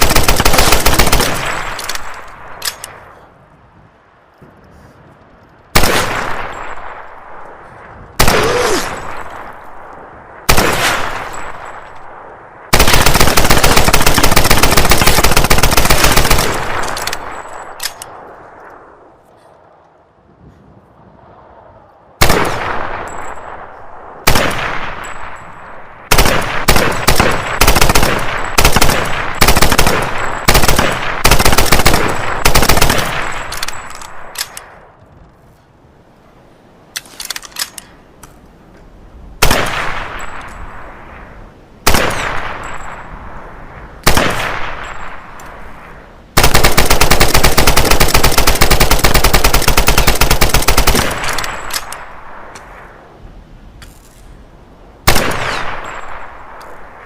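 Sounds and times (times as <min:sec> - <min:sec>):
submachine gun firing bursts: 0:00.0 - 0:02.1, 0:12.7 - 0:17.3, 0:26.1 - 0:33.9, 0:46.4 - 0:51.8.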